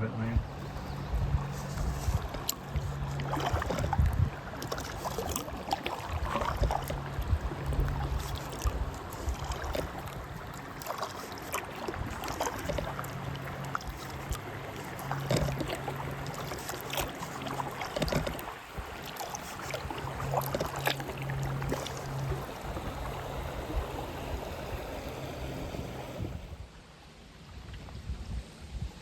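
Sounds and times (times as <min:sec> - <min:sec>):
wind buffeting microphone: 0:00.0 - 0:26.7
river water splashing and trickling: 0:00.0 - 0:27.9
small sharp splashes: 0:01.4 - 0:23.8.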